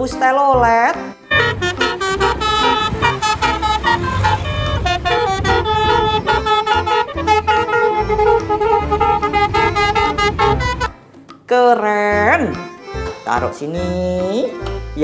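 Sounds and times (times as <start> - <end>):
musical bus horn tune: 1.2 - 11.0
low pulsing beat: 1.3 - 11.0.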